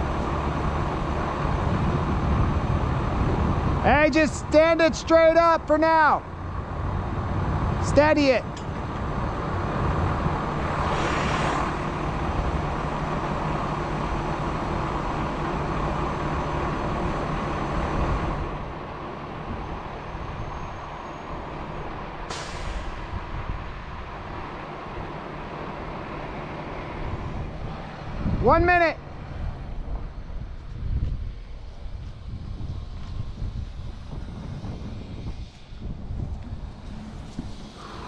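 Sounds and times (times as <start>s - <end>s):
diesel engine running: 0.0s - 4.5s, 8.5s - 20.2s, 31.7s - 38.0s
short hiss: 22.3s - 23.0s
sharp hiss: 22.3s - 23.1s, 36.9s - 38.0s.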